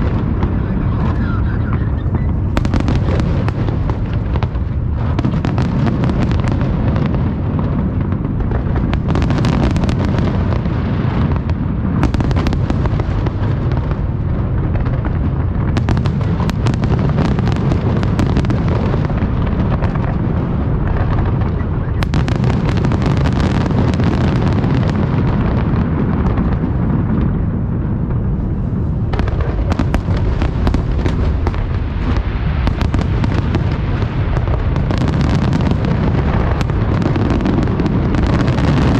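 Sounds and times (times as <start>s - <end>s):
low rumble: 0.0s - 9.1s.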